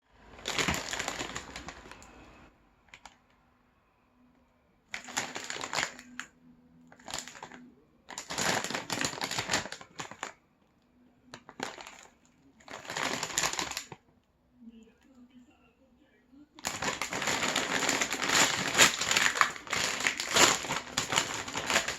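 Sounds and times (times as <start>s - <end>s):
potato chips being chewed: 16.6s - 21.9s.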